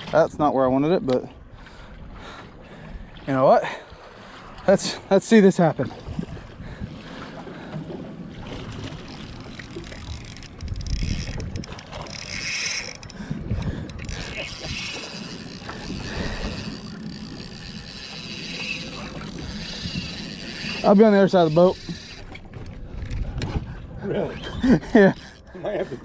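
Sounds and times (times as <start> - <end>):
water washing around boat: 1.4 - 26.0
wind buffeting microphone: 5.8 - 25.5.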